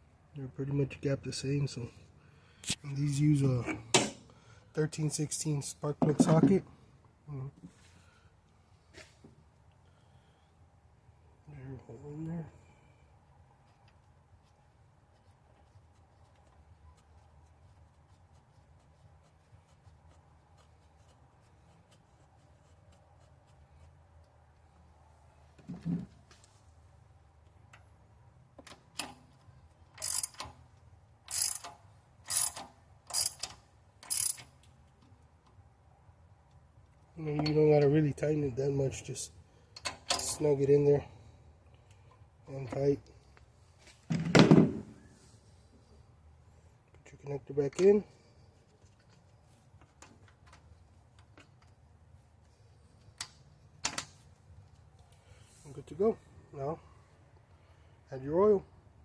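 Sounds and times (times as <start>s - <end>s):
ratchet wrench clicking: 29.9s - 30.6s, 31.3s - 34.7s.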